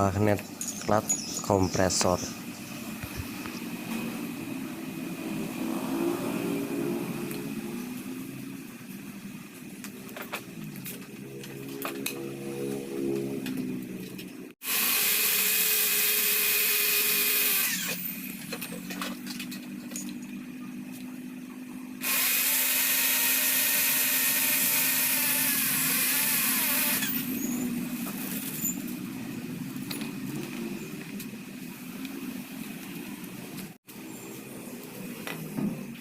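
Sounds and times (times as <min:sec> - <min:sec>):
power tool whining: 0:14.6 - 0:18.7, 0:22.0 - 0:28.8.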